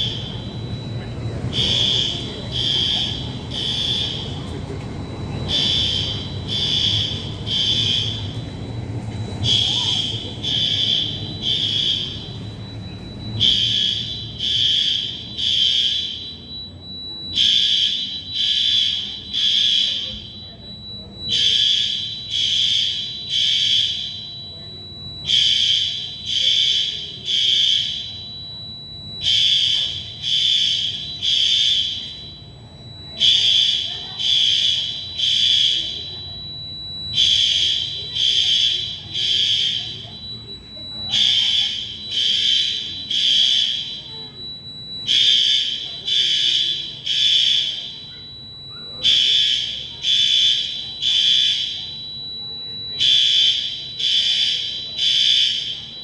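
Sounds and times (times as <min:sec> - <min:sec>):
fire alarm beeps: 0:00.0 - 0:56.0
thin steady high tone: 0:00.0 - 0:56.0.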